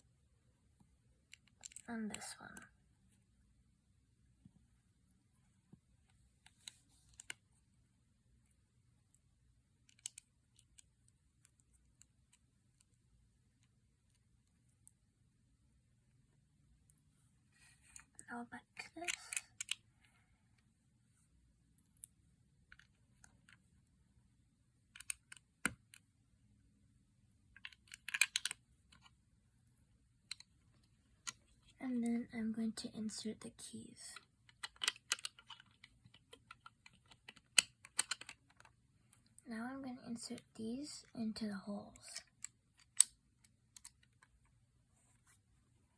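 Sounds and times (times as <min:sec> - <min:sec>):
plastic bricks clicking together: 0:01.3 - 0:01.9, 0:09.9 - 0:10.9, 0:19.1 - 0:19.8, 0:25.0 - 0:26.0, 0:27.6 - 0:29.1, 0:34.4 - 0:38.7, 0:42.2 - 0:44.4.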